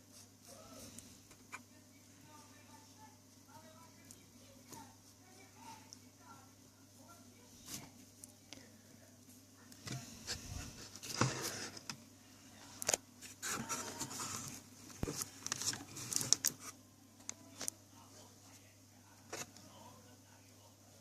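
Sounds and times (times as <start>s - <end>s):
faint low hum: 0.0s - 21.0s.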